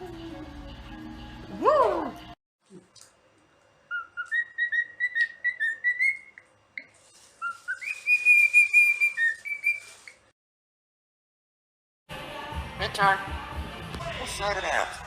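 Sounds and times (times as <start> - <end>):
parrot whistling a tune: 3.9 - 6.4, 7.4 - 10.2.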